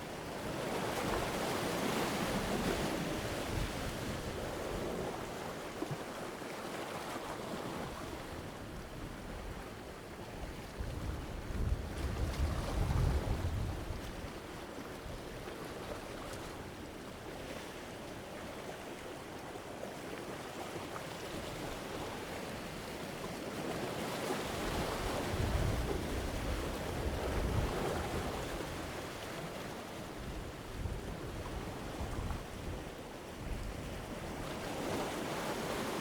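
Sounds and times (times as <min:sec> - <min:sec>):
ocean waves breaking on rocks: 0:00.4 - 0:08.4, 0:20.2 - 0:36.0.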